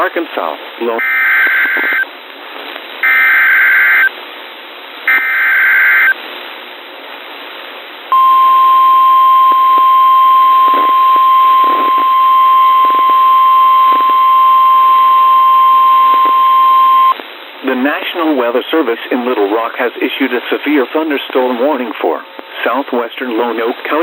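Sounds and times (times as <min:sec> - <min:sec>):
radio static hiss: 0:00.0 - 0:03.0, 0:09.5 - 0:15.0, 0:15.9 - 0:24.0
steady warning alarm tone: 0:03.0 - 0:04.1, 0:05.1 - 0:06.2, 0:08.1 - 0:17.2
screechy data bursts: 0:10.5 - 0:14.1.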